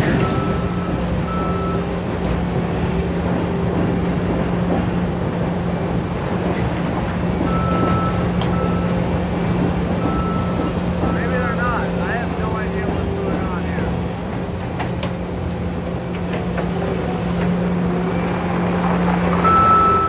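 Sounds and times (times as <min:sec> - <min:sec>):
backup alarm beeping: 0:00.0 - 0:03.4, 0:07.4 - 0:14.0, 0:19.4 - 0:20.0
heavy machinery engine running: 0:00.0 - 0:20.0.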